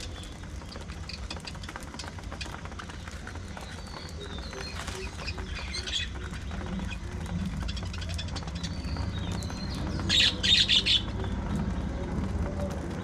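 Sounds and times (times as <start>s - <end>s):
budgerigars chirping: 4.2s - 11.3s
harsh bird squawks: 10.0s - 11.1s.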